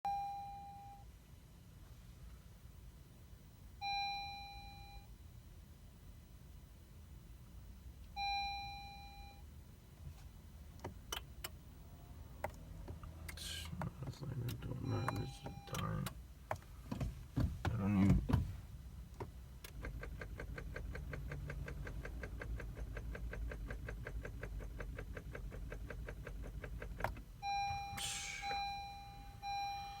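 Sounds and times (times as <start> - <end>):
car warning chime ding: 0.1 - 1.1, 3.8 - 5.1, 8.1 - 9.4, 14.5 - 16.2, 27.4 - 30.0
low steady rumble: 0.1 - 30.0.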